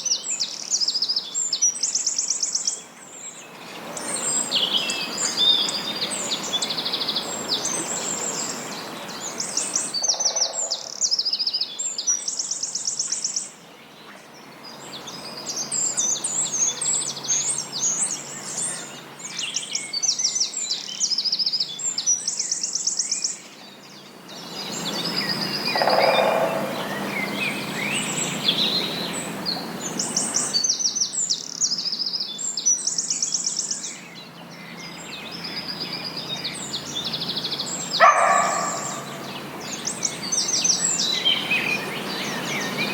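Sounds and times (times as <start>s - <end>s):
songbirds singing: 0.0s - 42.9s
fast high bird trill: 38.0s - 39.2s.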